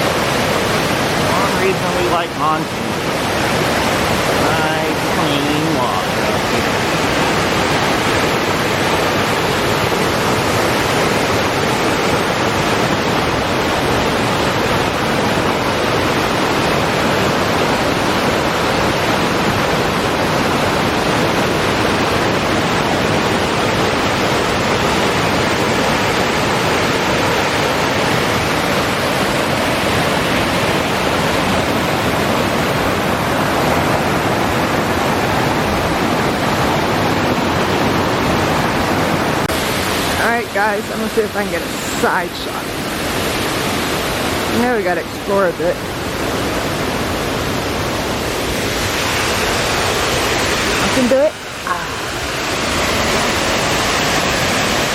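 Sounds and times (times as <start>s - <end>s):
waterfall roaring: 0.0s - 54.9s.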